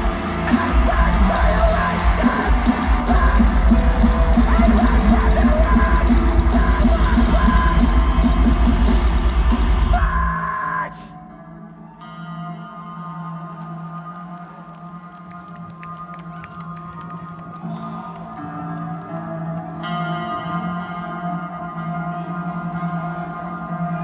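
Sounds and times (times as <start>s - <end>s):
pounding drums: 0.0s - 10.3s
metalcore band playing live: 0.0s - 11.1s
ringing guitar: 0.0s - 24.0s.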